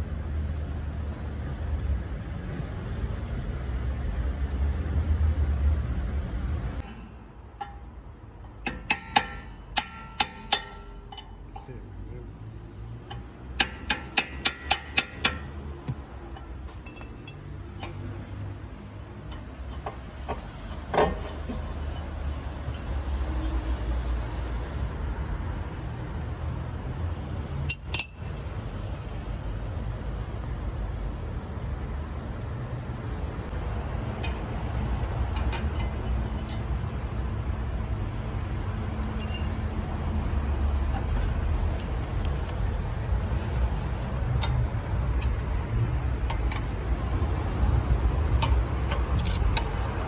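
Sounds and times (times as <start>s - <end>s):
tools clicking on metal: 13.0s - 18.5s, 27.7s - 28.4s, 34.2s - 36.7s, 40.9s - 50.0s.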